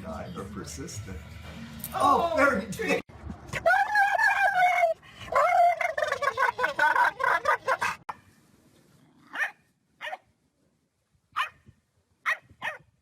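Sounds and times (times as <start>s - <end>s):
dog barking: 9.3s - 10.2s, 11.4s - 11.6s, 12.2s - 12.9s.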